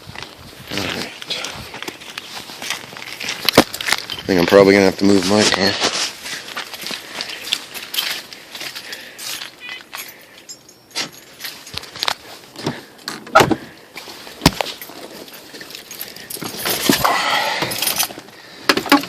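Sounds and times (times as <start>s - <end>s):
keys jangling: 7.8s - 12.2s, 14.7s - 18.3s.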